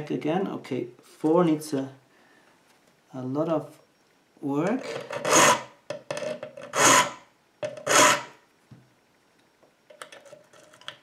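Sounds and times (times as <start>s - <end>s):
file rasping on steel: 4.9s - 5.7s, 6.7s - 7.2s, 7.8s - 8.3s.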